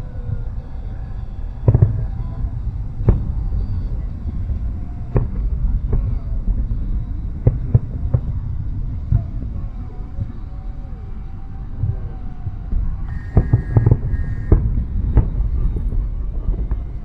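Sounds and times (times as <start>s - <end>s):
steady low rumble: 0.0s - 17.0s
fireworks bangs: 13.1s - 17.0s.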